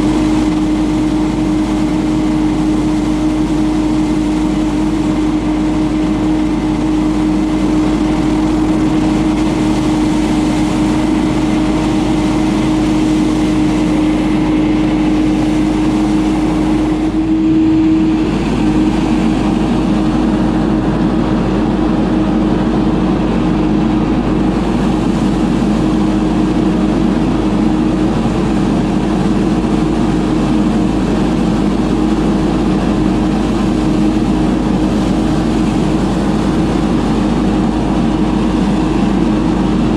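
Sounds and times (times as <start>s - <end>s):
blower engine humming: 0.0s - 39.9s
loud rush of air: 0.0s - 39.9s.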